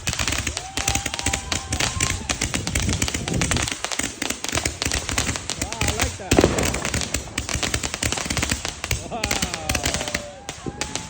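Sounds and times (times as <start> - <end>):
fireworks crackling and popping: 0.0 - 11.0.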